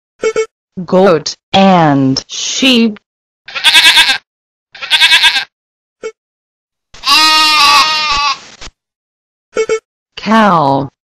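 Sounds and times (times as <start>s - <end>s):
goat and sheep bleating: 3.5s - 6.2s, 7.0s - 8.4s.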